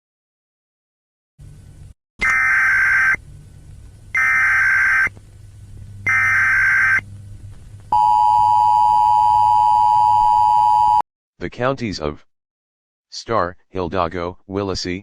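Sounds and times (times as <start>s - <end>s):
buzzy digital data bursts: 4.2s - 5.1s, 6.1s - 7.0s.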